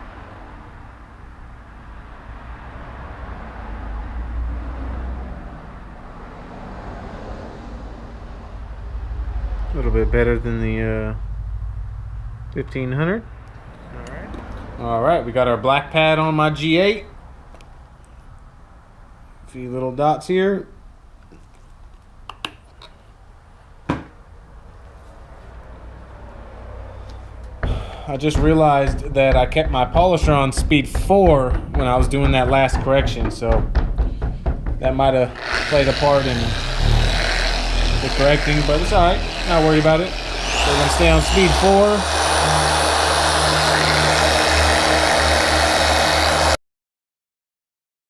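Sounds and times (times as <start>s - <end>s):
sharp knock: 27.6s - 38.2s
low broad rumble: 28.1s - 43.0s.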